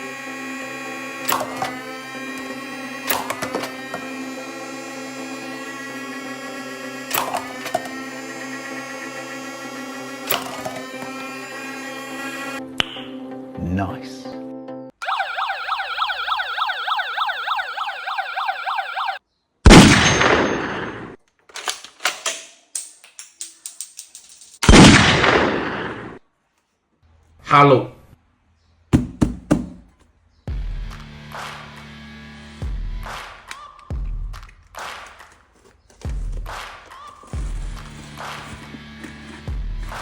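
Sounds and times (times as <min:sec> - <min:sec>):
electronic yelping siren: 0:15.0 - 0:19.2.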